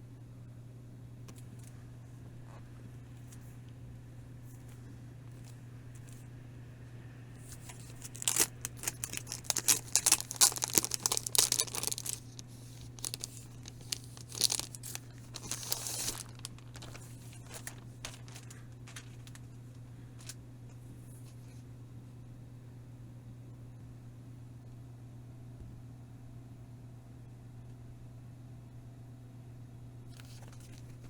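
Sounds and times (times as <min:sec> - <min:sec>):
packaging tearing and crinkling: 0:07.5 - 0:19.5.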